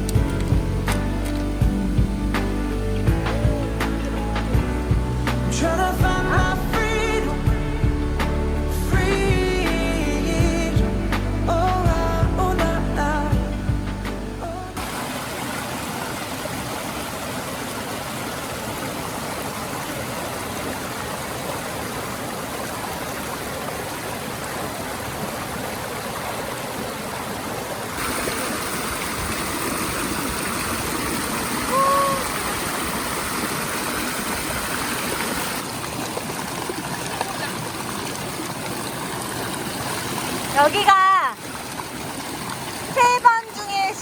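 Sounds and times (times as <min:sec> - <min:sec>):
stream rushing over rocks: 0:14.6 - 0:44.0.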